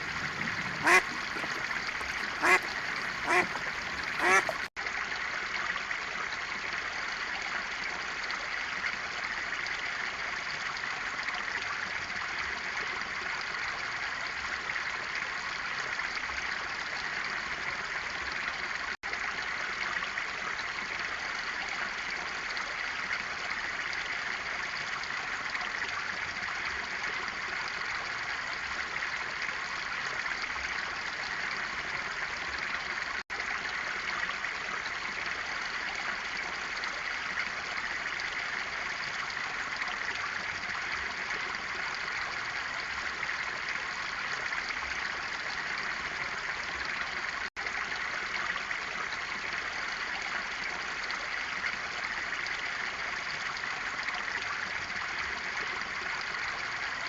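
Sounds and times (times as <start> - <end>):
flowing water: 0.0 - 57.0
duck quacking: 0.8 - 4.7.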